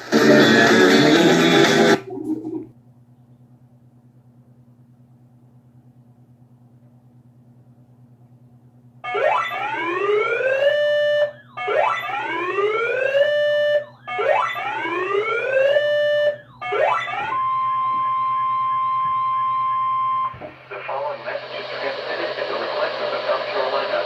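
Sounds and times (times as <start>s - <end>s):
faint low electrical hum: 2.0s - 24.0s
whooping alarm sweeps: 9.0s - 20.4s.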